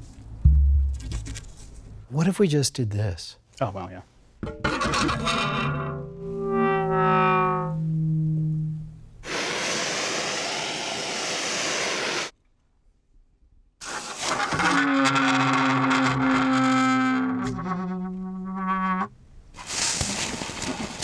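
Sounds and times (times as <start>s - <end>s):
loud rushing hiss: 9.2s - 12.3s.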